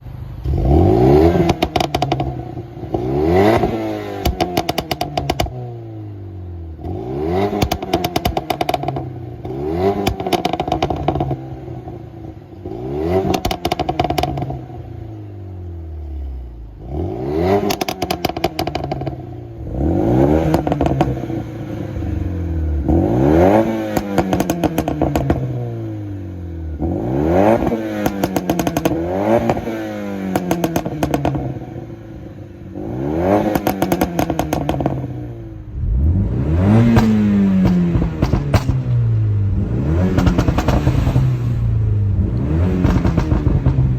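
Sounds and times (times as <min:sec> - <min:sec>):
car engine revving: 0:00.4 - 0:43.9
exhaust pops and crackles: 0:01.4 - 0:03.0, 0:03.6 - 0:05.6, 0:07.5 - 0:11.4, 0:13.2 - 0:14.6, 0:17.6 - 0:19.2, 0:20.5 - 0:21.2, 0:23.9 - 0:25.5, 0:27.6 - 0:29.7, 0:30.3 - 0:31.6, 0:33.5 - 0:35.1, 0:36.8 - 0:39.1, 0:40.0 - 0:41.4, 0:42.2 - 0:43.9.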